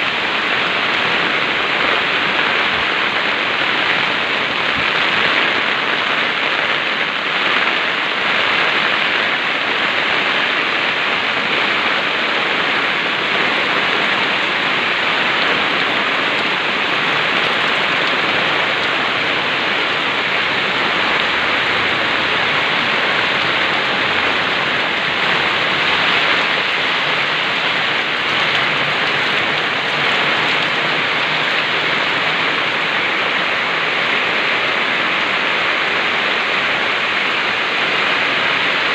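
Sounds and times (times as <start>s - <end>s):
heavy rain pouring: 0.0s - 38.9s.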